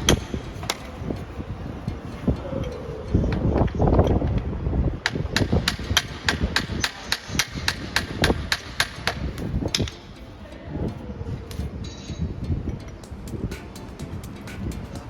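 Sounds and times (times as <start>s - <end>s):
rapid even sharp knocks: 5.0s - 10.0s.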